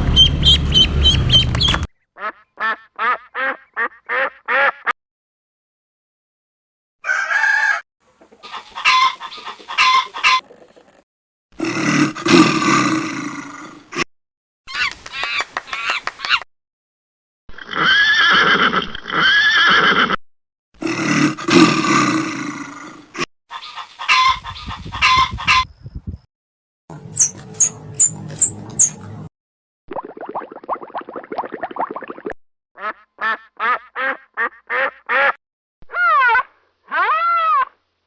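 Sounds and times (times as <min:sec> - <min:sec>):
roosters crowing: 0:07.0 - 0:07.8, 0:08.4 - 0:10.6
hens clucking: 0:07.0 - 0:11.0, 0:23.5 - 0:25.7.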